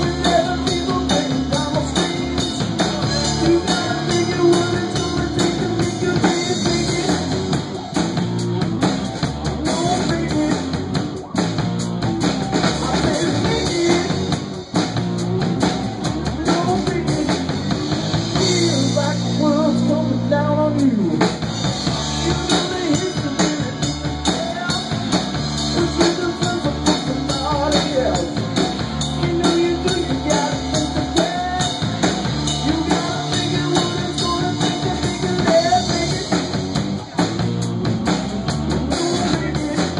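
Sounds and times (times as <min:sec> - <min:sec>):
live rock band playing: 0:00.0 - 0:39.9.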